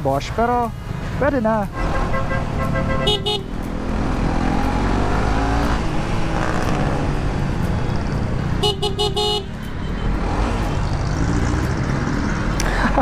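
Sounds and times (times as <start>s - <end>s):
traffic noise: 0.0s - 13.0s
motorcycle engine: 1.7s - 12.6s
motorcycle horn toots: 1.8s - 3.5s, 8.6s - 9.6s.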